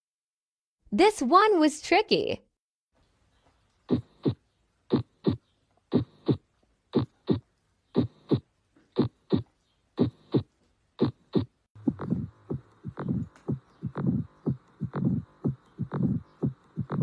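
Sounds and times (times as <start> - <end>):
heartbeat lub-dub: 3.9 - 6.4, 7.0 - 7.4, 8.0 - 17.0.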